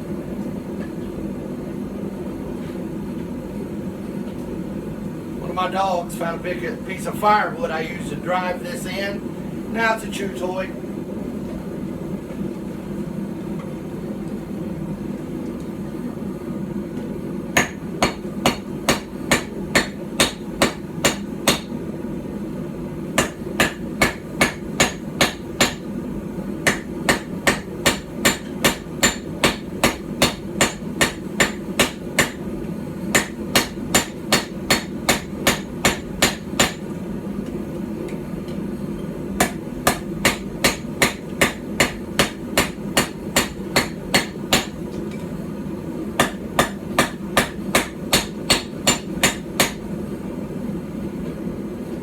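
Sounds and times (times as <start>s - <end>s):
steady low hum: 0.0s - 52.0s
hammer striking hot steel: 17.6s - 21.8s, 23.2s - 25.9s, 26.6s - 32.5s, 33.1s - 36.8s, 39.4s - 44.9s, 46.2s - 49.9s.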